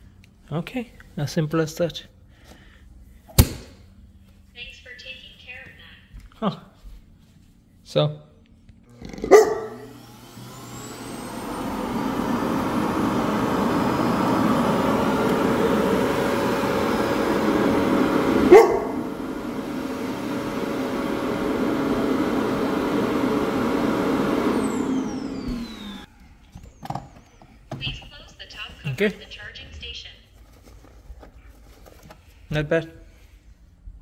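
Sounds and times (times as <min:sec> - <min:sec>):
suction motor running: 0:08.9 - 0:26.1.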